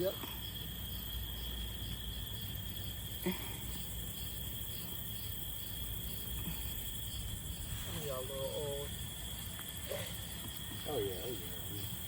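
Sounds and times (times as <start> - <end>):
insects chirping chorus: 0.0 - 12.0.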